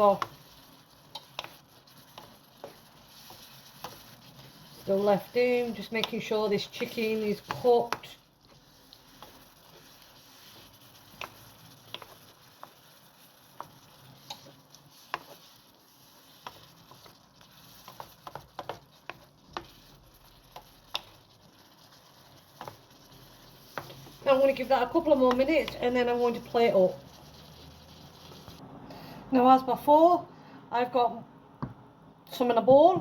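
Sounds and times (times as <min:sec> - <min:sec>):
food sizzling in a frying pan: 0:00.0 - 0:28.6
utensil clicking and tapping: 0:00.1 - 0:00.4, 0:01.0 - 0:04.1, 0:05.9 - 0:08.2, 0:11.0 - 0:12.8, 0:17.8 - 0:19.8, 0:20.5 - 0:21.2, 0:23.7 - 0:24.1, 0:25.2 - 0:25.8.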